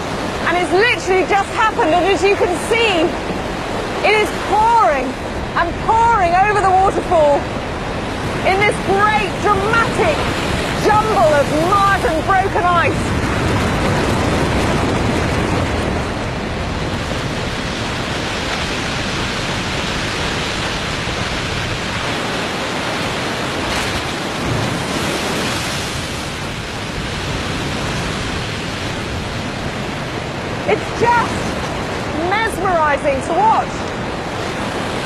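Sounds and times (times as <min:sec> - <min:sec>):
waterfall rushing: 0:00.0 - 0:35.0.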